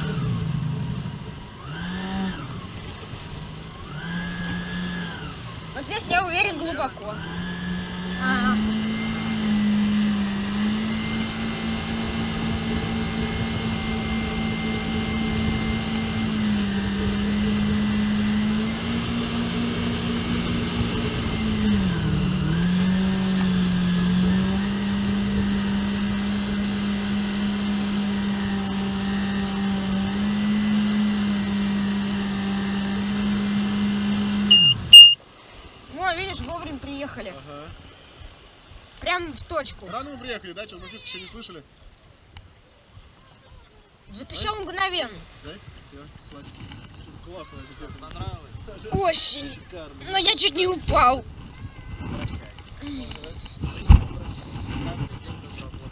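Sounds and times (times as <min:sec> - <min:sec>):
jet ski engine running: 0:00.0 - 0:41.4, 0:42.0 - 0:55.9
loud high beep: 0:34.5 - 0:35.2.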